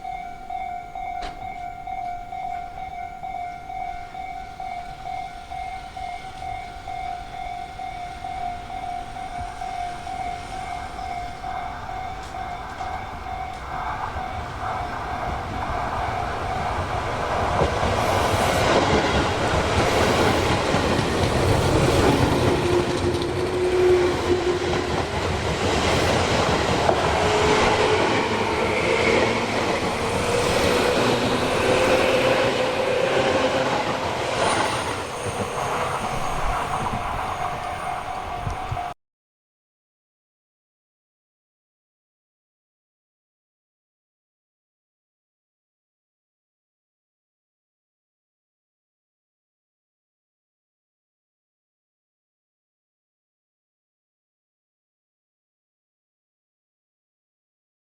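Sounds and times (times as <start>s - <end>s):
steady tone: 2.6s - 38.9s
train wheels clattering on rails: 7.8s - 38.9s
train motor whine: 8.5s - 38.9s.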